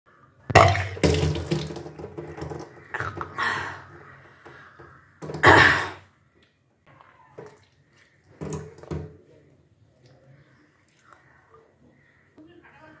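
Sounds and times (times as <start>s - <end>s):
water splashing down: 0.5s - 3.6s
person retching: 2.9s - 3.9s, 5.3s - 6.1s.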